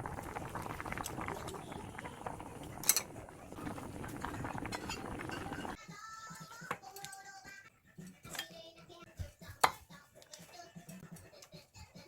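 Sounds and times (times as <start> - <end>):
clatter of food and utensils: 2.6 - 5.8.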